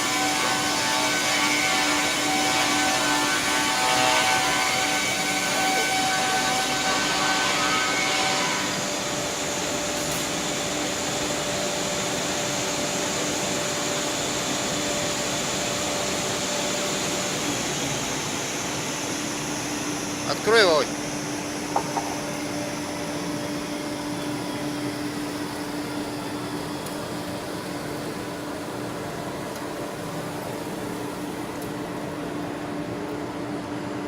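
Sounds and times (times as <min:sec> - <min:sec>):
circular saw cutting timber: 0:00.0 - 0:28.3.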